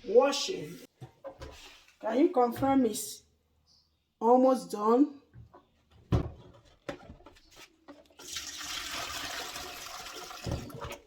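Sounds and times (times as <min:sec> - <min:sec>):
tap water running into bowl: 0:08.2 - 0:11.0.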